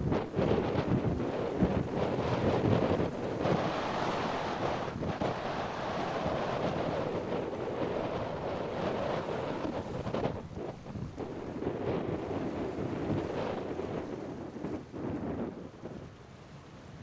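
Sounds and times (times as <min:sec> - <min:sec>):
waves washing: 0:00.0 - 0:17.0
wind buffeting microphone: 0:00.0 - 0:17.0.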